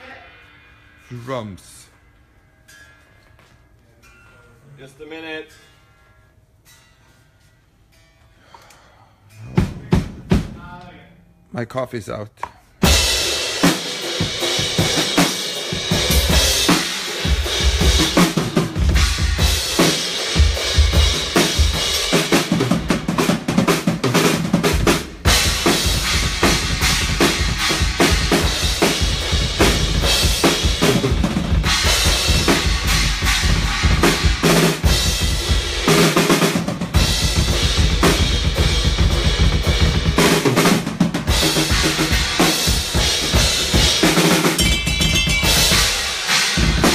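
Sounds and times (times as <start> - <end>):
drum kit played hard: 9.5 - 10.8, 12.8 - 46.9.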